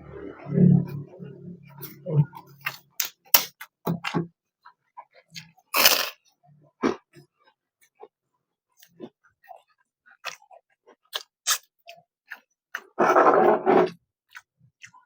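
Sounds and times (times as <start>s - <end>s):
loud noisy eating sound: 5.8s - 6.2s, 11.1s - 11.7s
wet mouth clicks and lip smacks: 11.1s - 12.4s.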